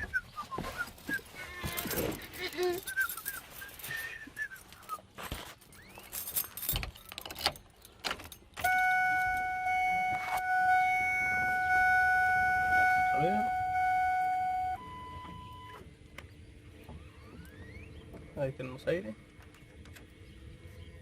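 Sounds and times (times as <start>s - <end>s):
keys rattling in ignition: 1.0s - 10.6s
steady pitched tone: 8.7s - 15.4s.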